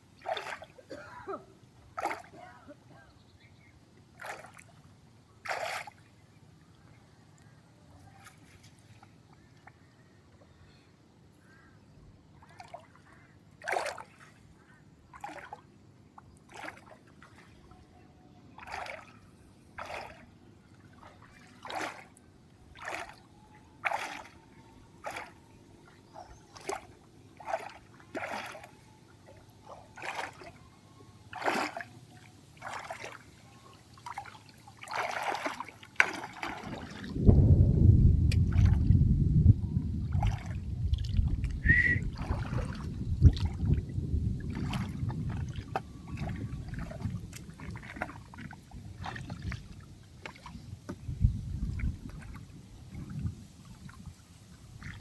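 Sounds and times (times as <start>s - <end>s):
water splashing: 0.2s - 1.0s, 1.9s - 2.5s, 4.2s - 4.8s, 5.4s - 6.0s, 12.4s - 14.4s, 15.1s - 15.6s, 16.5s - 17.6s, 18.6s - 30.7s, 31.3s - 39.0s, 40.0s - 55.0s.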